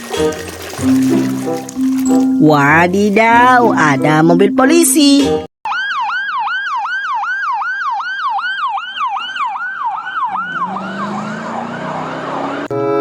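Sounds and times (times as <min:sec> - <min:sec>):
electronic police siren wailing: 0:05.6 - 0:12.7.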